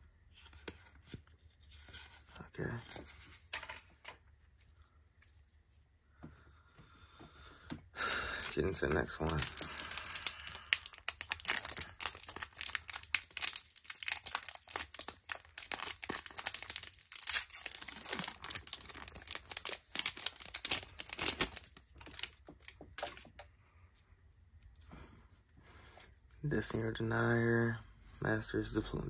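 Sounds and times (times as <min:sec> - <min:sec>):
foil pack tearing and crinkling: 0:08.4 - 0:23.2.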